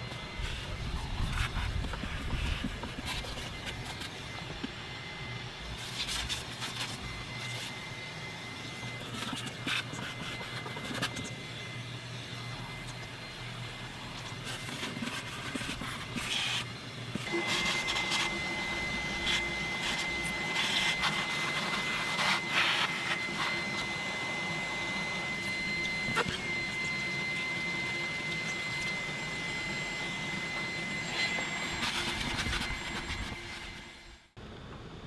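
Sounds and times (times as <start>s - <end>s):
vacuum cleaner running: 0.0s - 34.6s
steady high whine: 0.0s - 35.0s.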